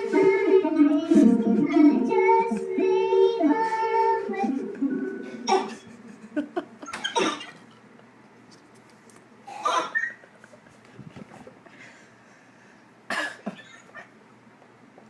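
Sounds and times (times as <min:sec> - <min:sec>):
person singing through voice changer: 0:00.0 - 0:05.5.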